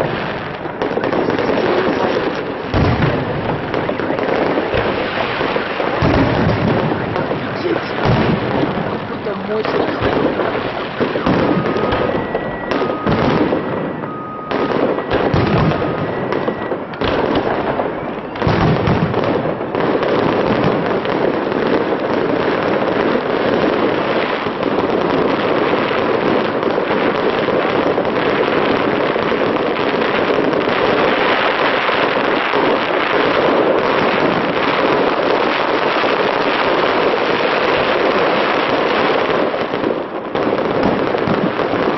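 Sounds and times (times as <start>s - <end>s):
firework crackle: 0.0s - 41.9s
firework shells bursting: 0.0s - 41.9s
faint two-tone beeping: 11.4s - 17.0s.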